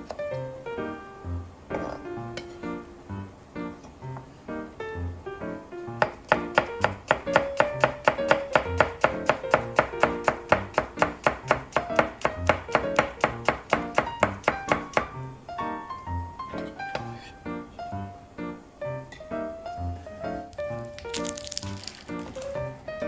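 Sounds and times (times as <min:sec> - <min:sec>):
light guitar music: 0:00.0 - 0:06.0
knife chopping on cutting board: 0:06.0 - 0:15.2.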